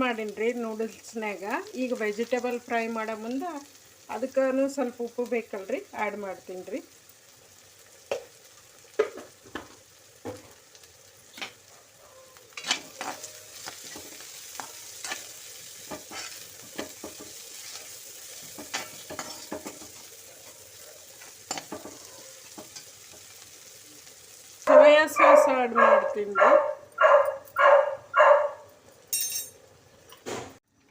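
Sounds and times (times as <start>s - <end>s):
vegetables sizzling in a pan: 0.0s - 30.6s
spatula scraping a pan: 12.4s - 23.4s.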